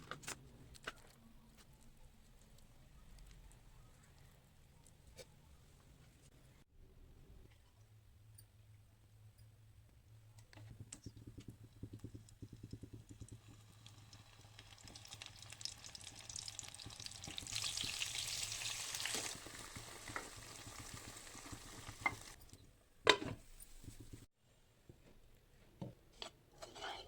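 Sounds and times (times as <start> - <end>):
vegetables sizzling in a pan: 13.5 - 22.4
spatula scraping a pan: 26.2 - 27.0.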